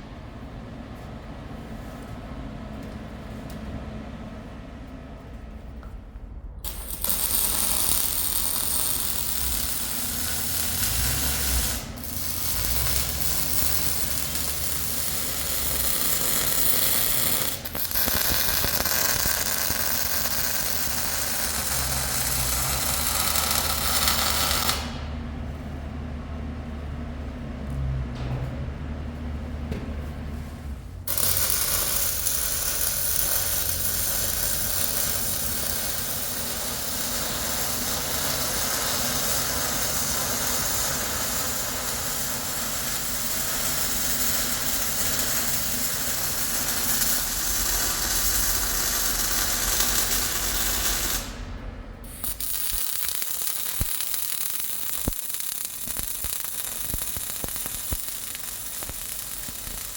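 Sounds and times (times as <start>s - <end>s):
welding arc crackling and hissing: 6.6s - 25.1s, 31.1s - 51.4s, 52.0s - 59.9s.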